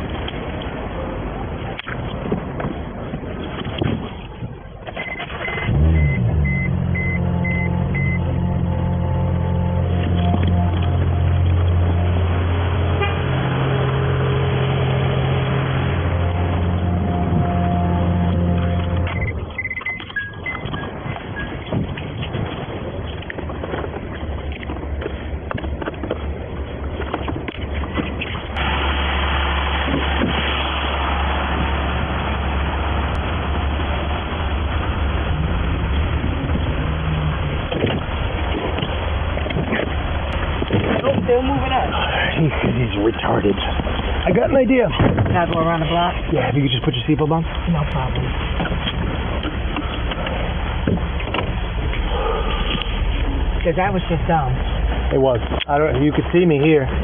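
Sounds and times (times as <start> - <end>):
vehicle engine drone: 0.0 - 57.0
road or wind noise hiss: 28.6 - 39.3.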